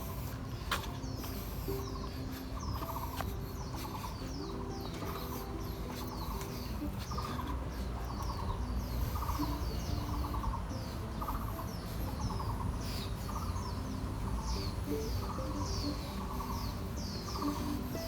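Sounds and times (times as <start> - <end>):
high falling bird chirps: 0.0 - 18.0
lower trilled bird call: 0.0 - 18.0
steady low rumble: 0.0 - 18.0.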